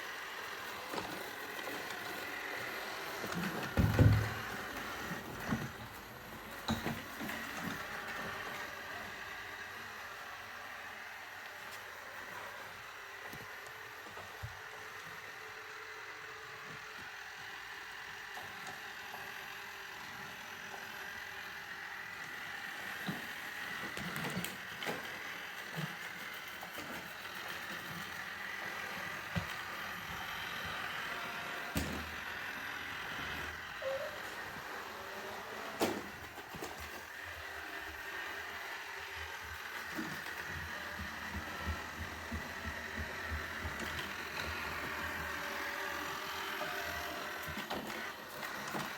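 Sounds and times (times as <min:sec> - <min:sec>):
robot vacuum whirring: 0:00.0 - 0:48.9.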